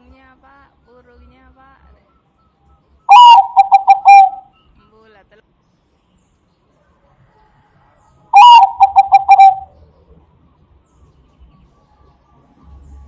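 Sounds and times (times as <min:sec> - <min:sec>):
dove cooing: 0:03.1 - 0:04.4, 0:08.3 - 0:09.8.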